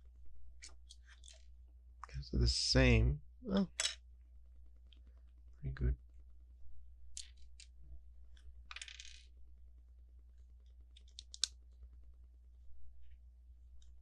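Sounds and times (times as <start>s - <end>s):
plastic pieces clicking and clattering: 8.3s - 9.3s, 10.9s - 11.5s.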